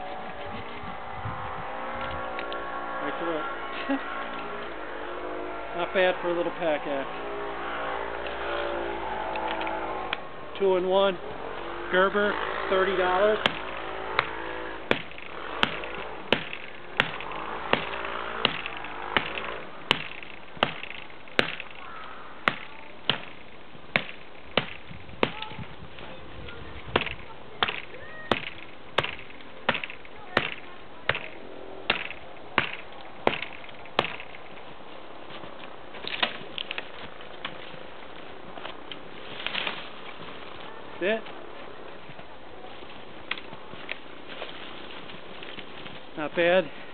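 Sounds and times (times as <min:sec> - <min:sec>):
axe chopping wood: 0:13.4 - 0:25.5, 0:26.9 - 0:34.6, 0:36.0 - 0:37.6.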